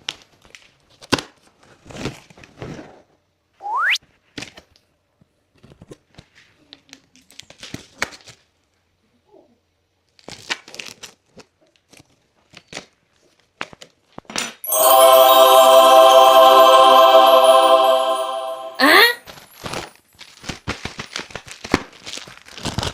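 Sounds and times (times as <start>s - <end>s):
music with held notes: 14.7s - 19.2s.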